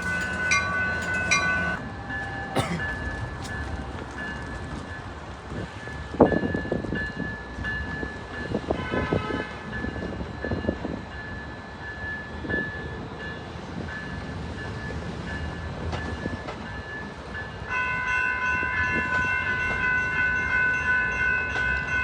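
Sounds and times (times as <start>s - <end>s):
train rolling over track: 0.0s - 17.7s
railroad crossing bell ringing: 0.0s - 22.0s
train horn toot: 8.7s - 9.7s.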